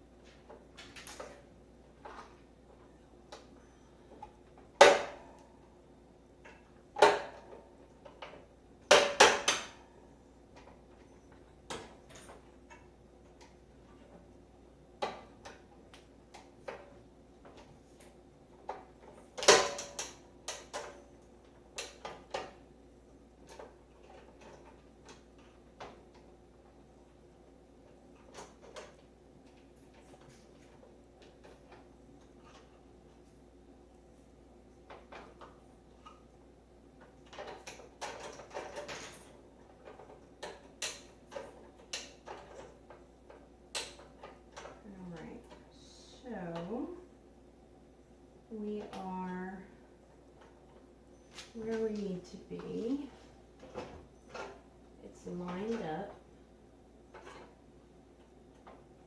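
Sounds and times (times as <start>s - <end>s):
small parts clicking and clattering: 37.0s - 45.7s, 57.1s - 57.6s.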